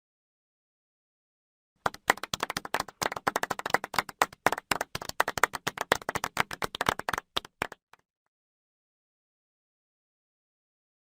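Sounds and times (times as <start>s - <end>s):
hand clapping: 1.8s - 8.0s.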